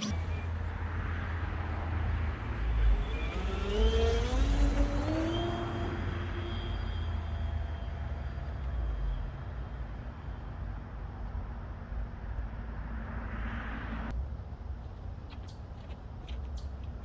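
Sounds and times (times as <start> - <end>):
model plane motor whining: 2.5 - 7.9.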